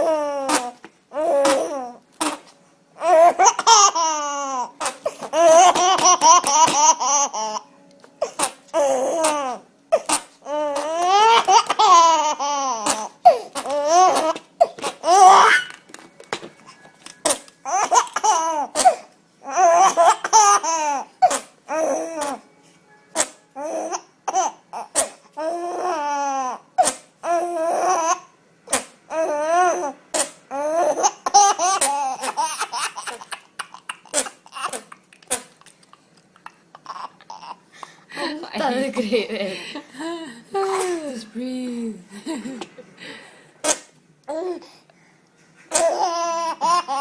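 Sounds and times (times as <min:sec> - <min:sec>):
baby laughing: 0:03.0 - 0:07.6, 0:08.2 - 0:15.8, 0:17.7 - 0:22.4, 0:25.8 - 0:37.6, 0:45.6 - 0:47.0.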